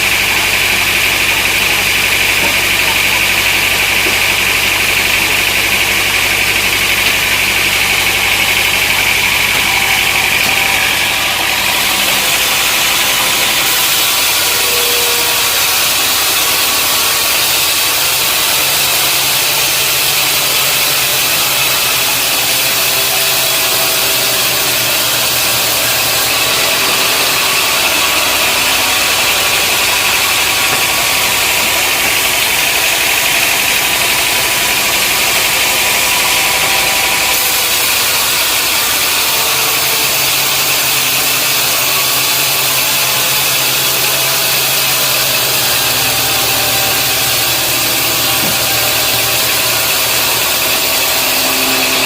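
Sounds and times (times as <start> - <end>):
sawmill machinery running: 0.0 - 52.0
high ringing tone: 43.4 - 52.0.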